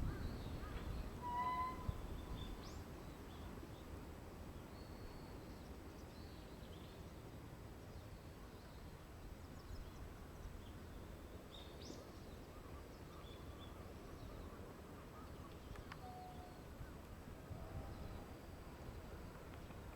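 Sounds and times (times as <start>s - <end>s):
faint bird chirps: 0.1s - 3.4s, 12.5s - 17.0s.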